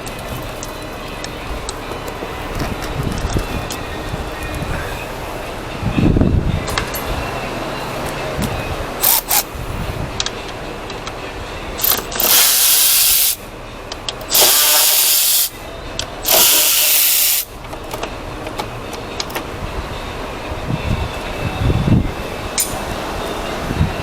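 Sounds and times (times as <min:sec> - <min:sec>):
workshop background noise: 0:00.0 - 0:24.0
compressed air hissing: 0:11.8 - 0:13.4, 0:14.3 - 0:15.6, 0:16.2 - 0:17.5.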